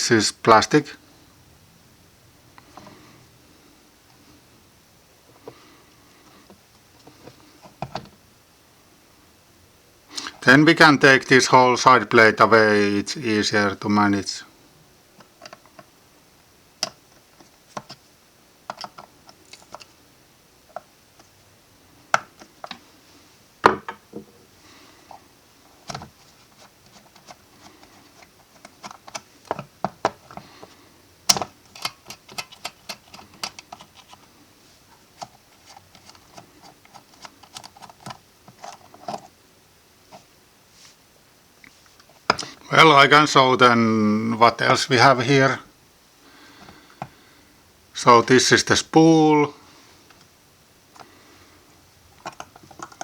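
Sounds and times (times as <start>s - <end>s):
small metal and plastic parts clicking: 31.3s - 34.3s, 35.2s - 39.3s, 52.2s - 53.0s.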